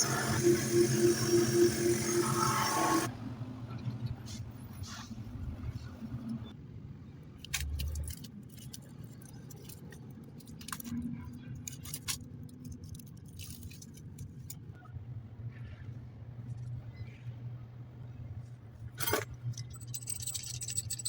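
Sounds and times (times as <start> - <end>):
metal tools clinking: 19.0 - 21.0.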